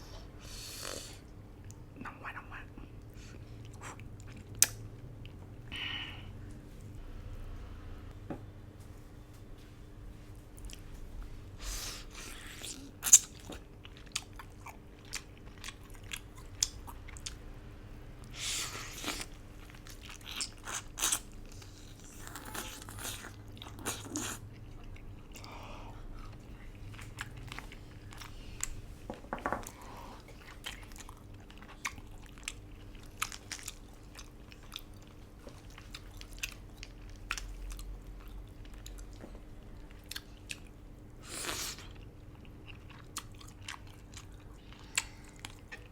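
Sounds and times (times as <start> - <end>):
wet chewing and mouth smacks: 12.4 - 17.4, 41.4 - 45.9.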